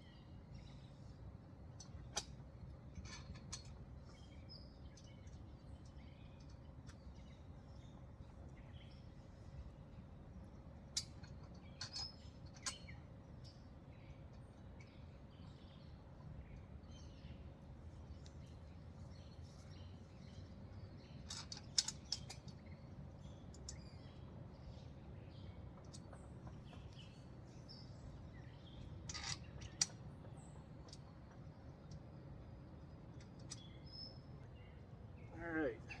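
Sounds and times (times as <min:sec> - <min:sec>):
birds chirping faintly: 0:00.0 - 0:36.0.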